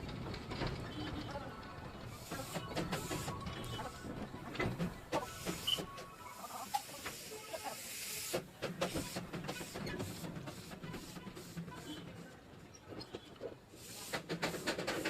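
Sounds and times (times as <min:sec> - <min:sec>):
train running: 0:00.0 - 0:12.4, 0:13.1 - 0:15.0
hiss: 0:06.5 - 0:11.6, 0:13.8 - 0:15.0.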